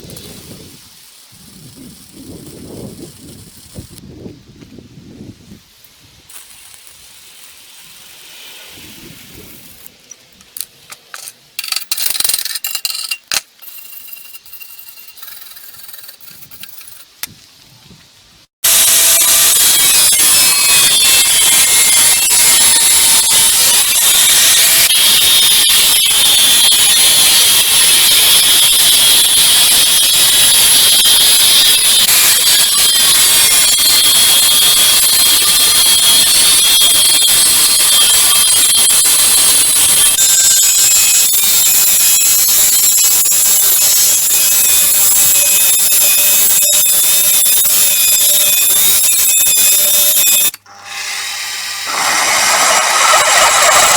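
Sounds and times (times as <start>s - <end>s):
angle grinder grinding steel: 11.6s - 17.1s, 18.6s - 53.9s.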